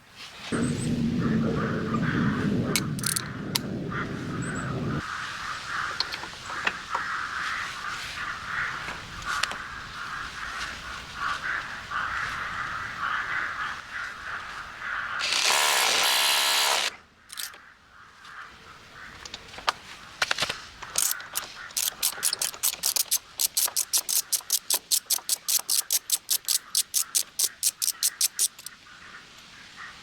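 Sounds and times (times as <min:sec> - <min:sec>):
loud noisy burst: 0:15.2 - 0:16.9
rapid mechanical clicks: 0:20.8 - 0:28.7.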